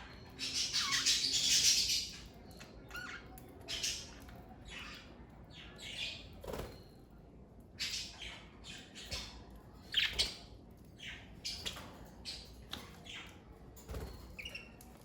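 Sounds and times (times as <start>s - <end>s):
budgerigars chattering and chirping: 0.0s - 6.3s.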